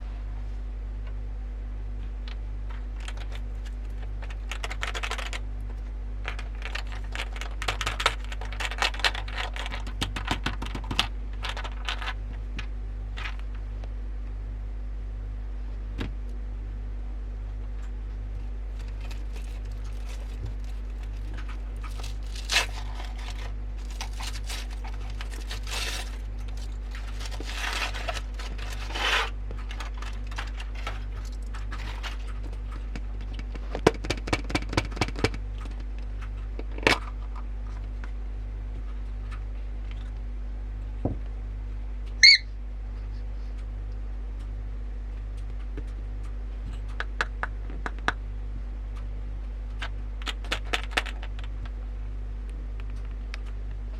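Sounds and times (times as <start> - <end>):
steady low hum: 0.0 - 53.9
handling scrapes and rustles: 18.7 - 32.9
short high squeak: 42.2 - 42.5.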